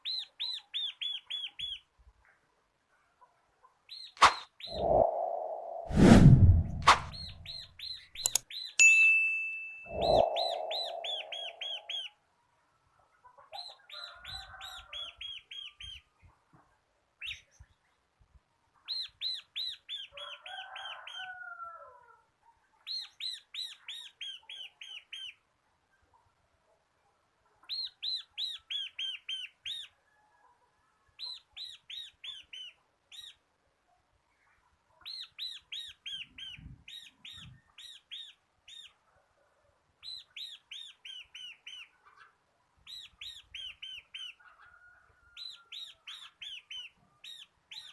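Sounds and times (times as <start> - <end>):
bird singing rapid trills: 9.8 - 12.1
lower chattering bird call: 9.9 - 12.1.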